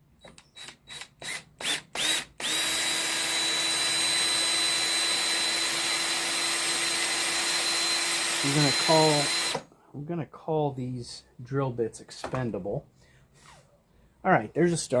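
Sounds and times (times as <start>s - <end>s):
electric drill boring through wood: 0.4s - 9.7s.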